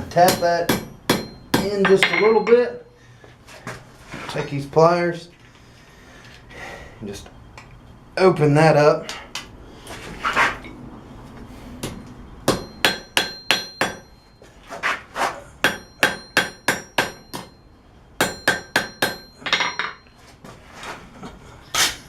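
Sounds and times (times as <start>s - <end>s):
hammer tapping steel: 0.0s - 2.7s, 11.8s - 14.2s, 15.6s - 17.6s, 18.2s - 20.1s.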